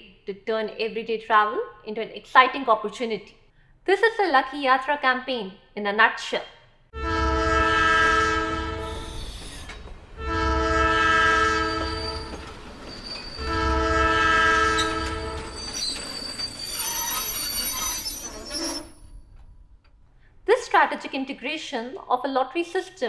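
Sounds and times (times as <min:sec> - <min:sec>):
train horn blasts: 0:07.0 - 0:09.3, 0:10.2 - 0:12.4, 0:13.4 - 0:15.6
train low rumble: 0:07.0 - 0:16.4
train wheels squealing: 0:08.8 - 0:09.9, 0:11.4 - 0:19.4.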